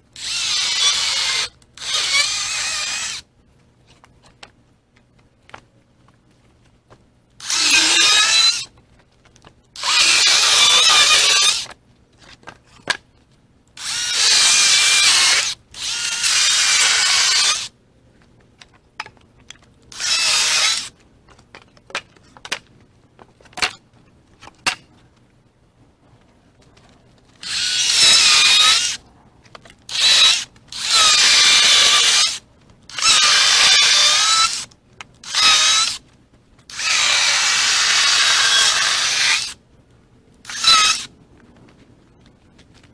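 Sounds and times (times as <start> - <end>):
electric saw cutting wood: 7.4 - 8.7, 9.8 - 11.7, 13.8 - 17.7, 20.0 - 20.9, 27.4 - 29.0, 29.9 - 36.0, 36.7 - 39.6, 40.5 - 41.1.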